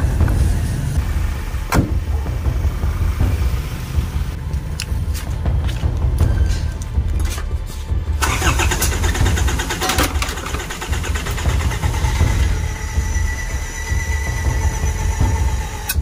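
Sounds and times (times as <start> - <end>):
diesel engine rumbling: 0.0 - 16.0
engine clatter: 8.1 - 16.0.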